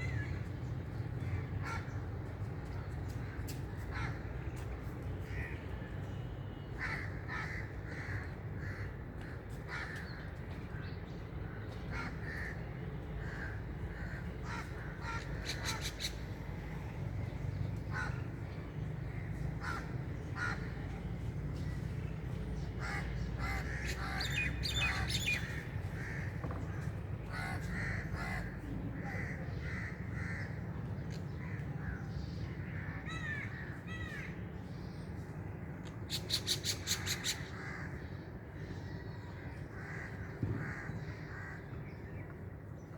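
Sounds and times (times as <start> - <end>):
crows cawing: 6.8 - 9.0, 9.7 - 10.2, 13.2 - 16.1, 19.1 - 20.8, 22.8 - 25.4, 26.0 - 30.6.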